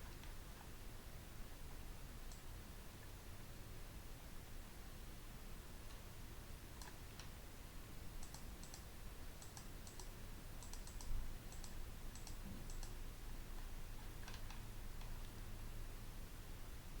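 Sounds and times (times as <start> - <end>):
computer mouse clicking: 6.8 - 7.4, 8.2 - 13.0, 13.6 - 15.2.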